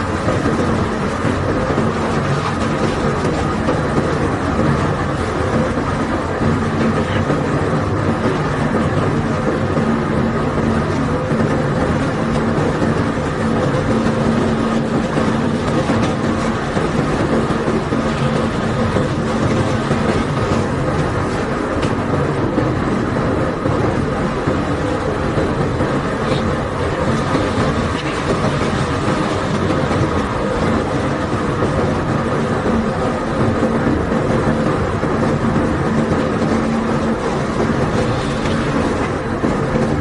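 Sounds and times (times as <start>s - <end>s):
machinery humming: 0.0s - 40.0s
rough rushing noise: 0.0s - 40.0s.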